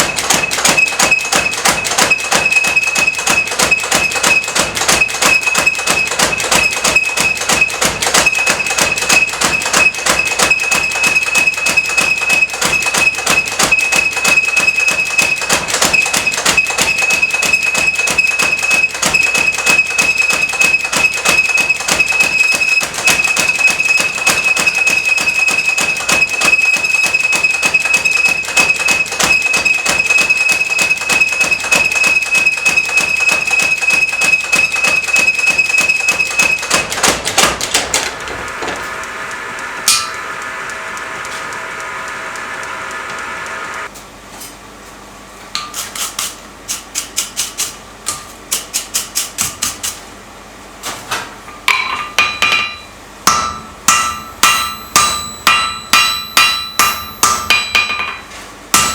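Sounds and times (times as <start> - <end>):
power hammer pounding hot steel: 0.0 - 43.9, 51.7 - 58.9
steady high ring: 38.4 - 43.9, 51.9 - 58.9.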